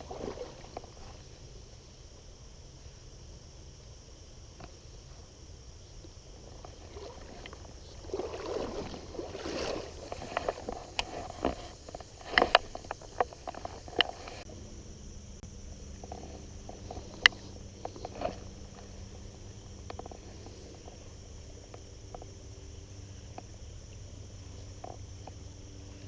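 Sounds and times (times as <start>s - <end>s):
water splashing around wading person: 0.0s - 1.8s, 6.0s - 14.5s, 15.8s - 26.0s
sharp clicks and knocks: 10.1s - 14.4s.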